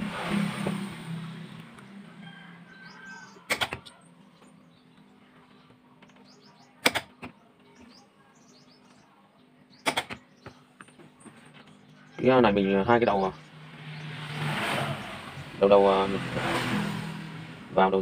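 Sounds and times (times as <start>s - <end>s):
bird chirps: 1.8s - 6.8s, 7.6s - 15.6s.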